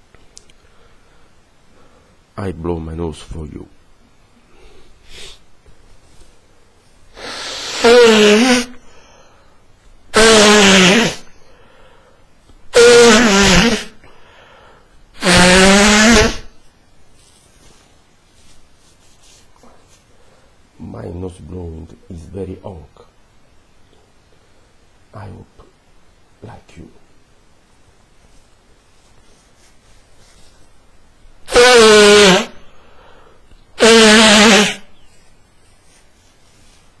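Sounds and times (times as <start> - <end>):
man blowing his nose: 4.5 - 5.5, 7.1 - 9.3, 10.1 - 11.5, 12.7 - 16.6, 31.4 - 36.0.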